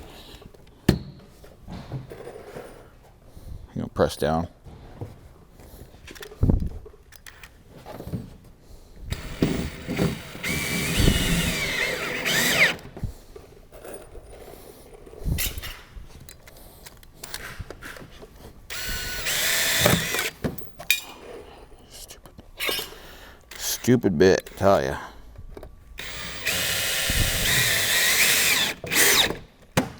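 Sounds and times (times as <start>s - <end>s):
handheld power drill running: 9.1s - 12.9s, 18.7s - 20.4s, 23.5s - 24.8s, 26.0s - 29.4s.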